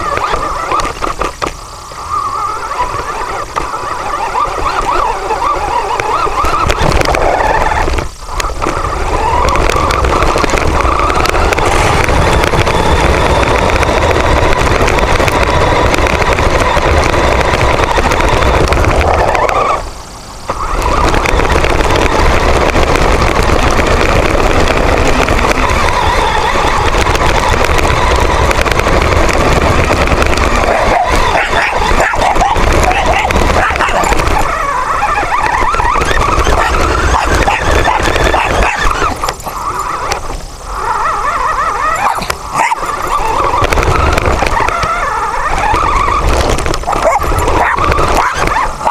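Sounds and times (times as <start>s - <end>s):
robot drive and tyres rumbling: 0.0s - 48.9s
small dog barking: 30.6s - 34.5s, 36.5s - 38.9s, 41.8s - 43.0s, 46.9s - 48.9s.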